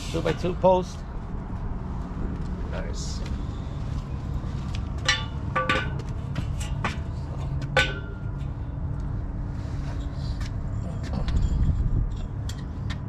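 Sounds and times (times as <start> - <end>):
low rumble: 1.0 - 12.6
steel pieces knocking together: 5.0 - 7.0, 7.6 - 8.4.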